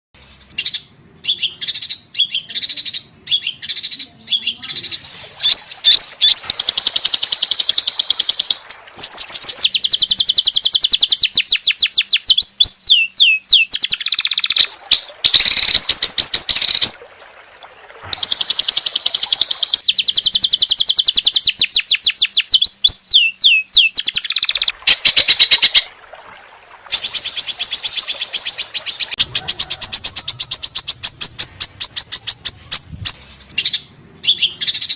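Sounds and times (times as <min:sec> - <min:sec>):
songbird trilling: 0:00.6 - 0:17.0, 0:18.2 - 0:25.8, 0:26.9 - 0:34.9.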